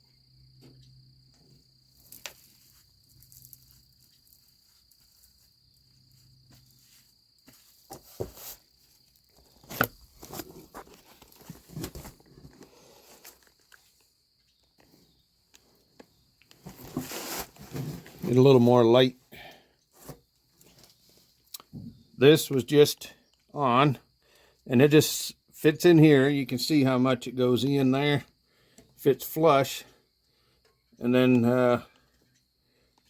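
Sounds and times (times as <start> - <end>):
high-pitched insect trill: 0.0 - 9.4.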